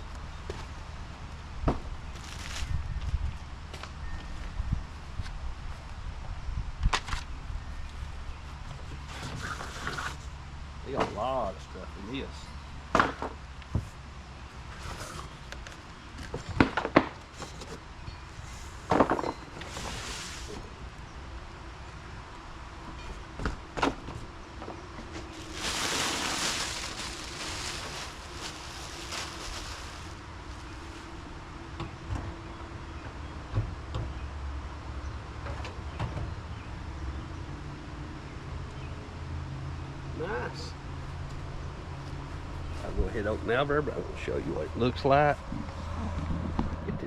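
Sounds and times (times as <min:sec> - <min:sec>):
packaging rustle: 0:25.1 - 0:30.9.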